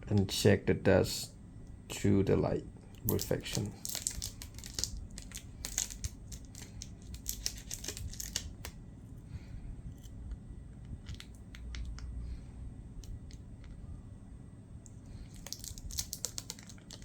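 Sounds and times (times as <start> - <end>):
sticky tape crackling: 3.0 - 8.8, 15.2 - 17.0.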